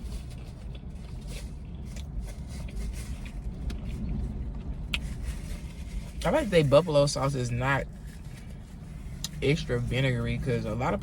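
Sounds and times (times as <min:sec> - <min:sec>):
chewing and mouth clicks: 0:00.0 - 0:05.8
low steady rumble: 0:00.0 - 0:11.0.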